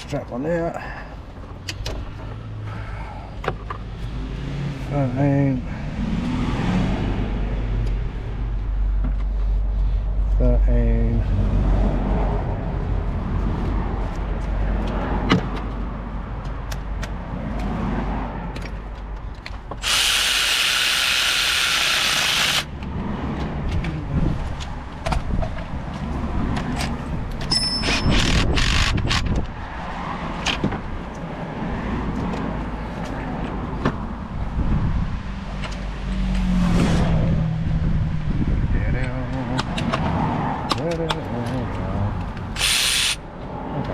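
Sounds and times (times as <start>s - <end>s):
power tool running: 19.8s - 22.7s, 42.6s - 43.2s
hand tools clicking and knocking: 39.4s - 43.1s.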